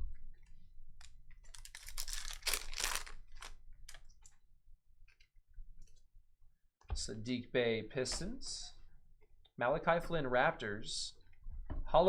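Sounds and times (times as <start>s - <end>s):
cards clicking and rustling: 1.4s - 4.0s.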